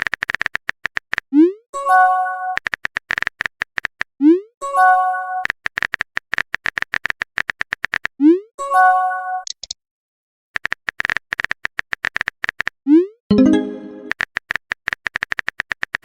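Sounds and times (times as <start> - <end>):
phone keyboard typing clicks: 9.4 - 9.8
short multi-note chime: 13.3 - 14.1.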